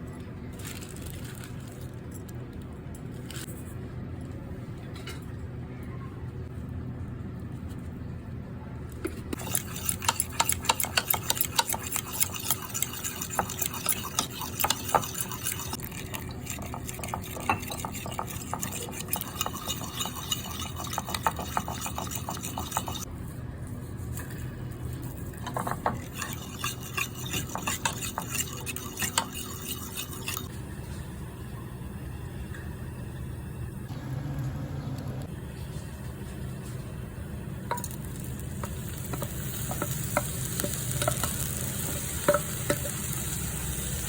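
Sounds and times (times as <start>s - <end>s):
metal utensil scraping a pot: 9.4s - 23.1s, 25.3s - 30.5s.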